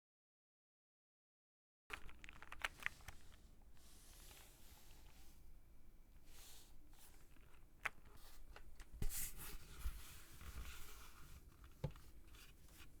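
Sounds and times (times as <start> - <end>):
keyboard handling clicks: 1.9 - 3.4.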